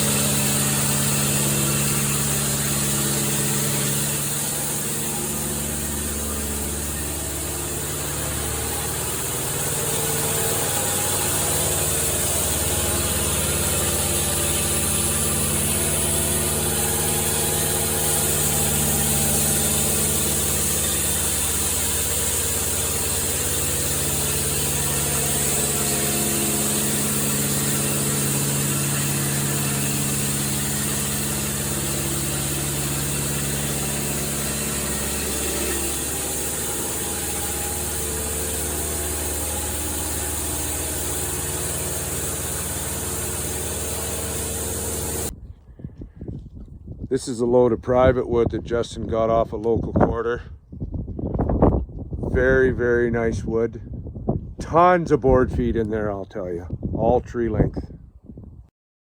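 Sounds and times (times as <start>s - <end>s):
engine running steadily: 0.0s - 45.4s.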